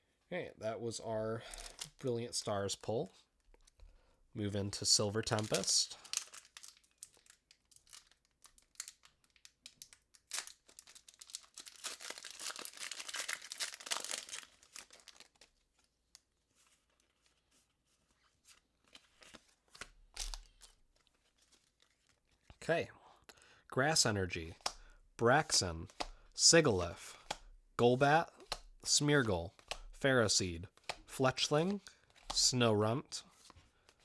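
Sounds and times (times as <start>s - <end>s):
foil wrapper crinkling and tearing: 5.3s - 15.6s.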